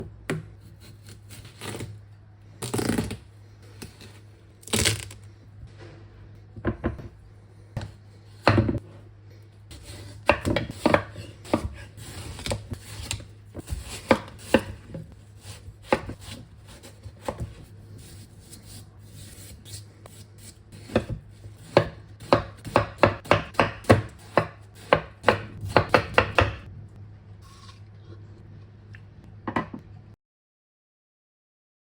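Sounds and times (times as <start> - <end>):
steady low hum: 0.0 - 30.2
knife cutting watermelon: 0.7 - 2.0.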